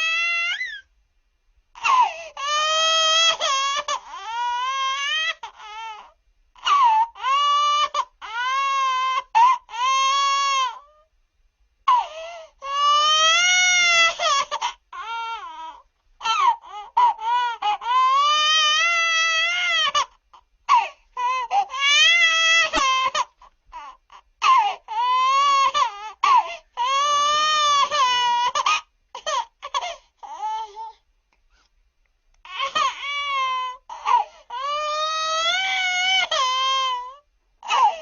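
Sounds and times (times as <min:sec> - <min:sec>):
cartoon baby crying: 0:00.0 - 0:00.9.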